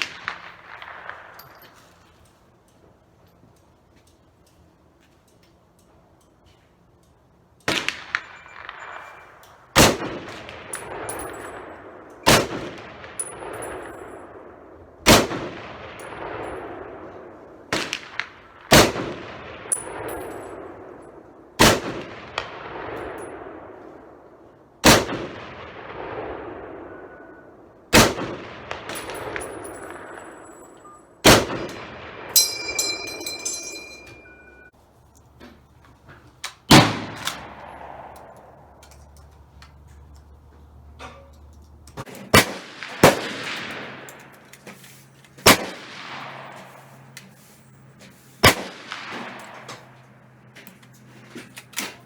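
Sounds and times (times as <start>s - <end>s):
rifle shots echoing: 0.0s - 1.9s, 7.7s - 34.7s, 36.7s - 38.8s, 42.3s - 44.4s, 45.4s - 47.2s, 48.4s - 50.4s
metallic pings: 32.4s - 34.7s.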